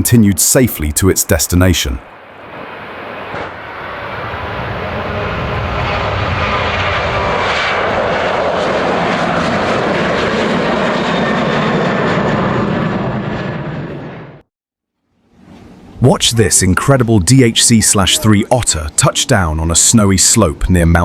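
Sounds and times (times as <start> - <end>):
jet engines running at high power: 2.1 - 14.4.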